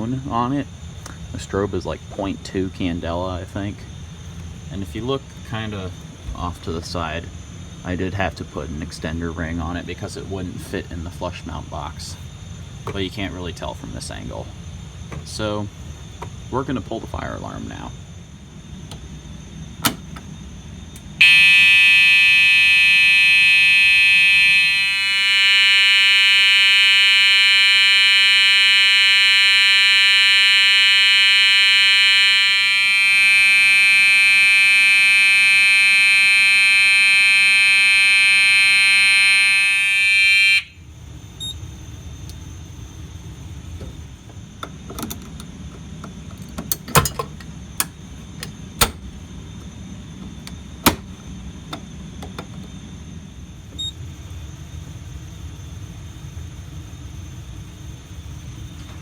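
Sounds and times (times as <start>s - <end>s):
fire alarm horn tone: 21.2s - 40.8s.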